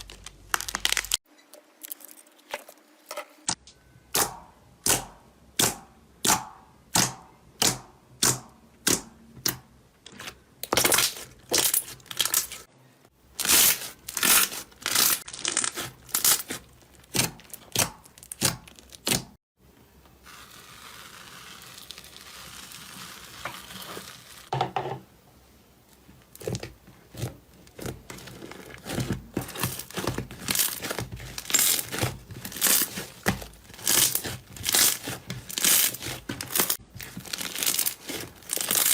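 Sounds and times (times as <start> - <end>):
soft slime rustling: 26.0 - 38.9.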